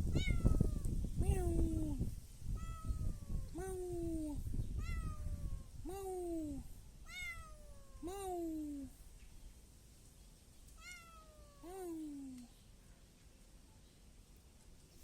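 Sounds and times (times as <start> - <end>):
kitten meowing: 0.1 - 1.8, 2.6 - 3.8, 4.8 - 5.7, 7.1 - 8.3, 10.8 - 12.2.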